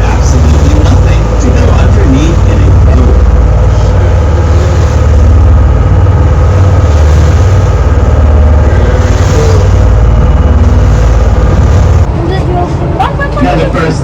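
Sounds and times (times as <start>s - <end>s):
wind noise on microphone: 0.0s - 12.2s
boat engine rumble: 0.0s - 14.0s.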